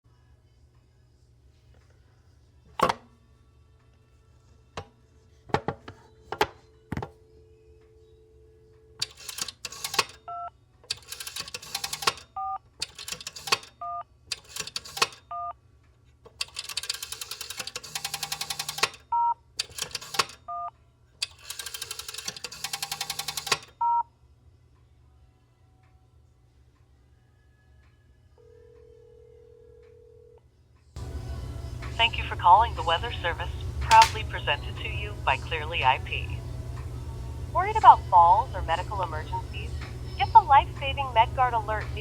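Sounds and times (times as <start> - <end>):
rotary dial whirring and clicking: 9.0 - 10.2, 10.9 - 15.5, 16.3 - 19.0, 19.6 - 20.6, 21.2 - 23.7
dial tone: 28.4 - 30.4
telephone handset clicks: 33.9 - 34.3.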